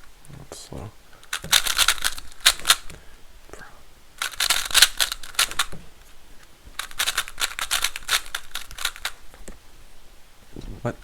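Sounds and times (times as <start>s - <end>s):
puzzle cube clicking as turned: 1.2s - 3.0s, 4.2s - 5.8s, 6.8s - 9.6s.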